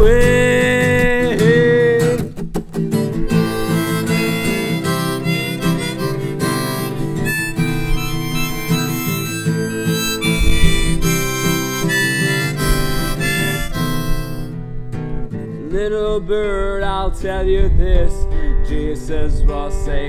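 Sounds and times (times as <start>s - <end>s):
acoustic guitar: 0.0s - 20.0s
harmonica solo: 3.0s - 14.8s.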